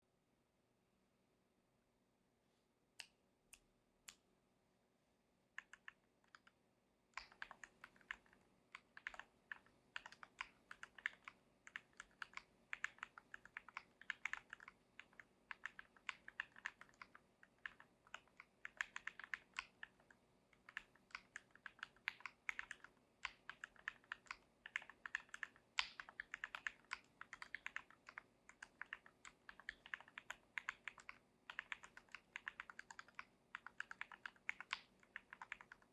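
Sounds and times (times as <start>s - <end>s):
mechanical keyboard typing: 5.6s - 6.5s, 7.2s - 35.9s.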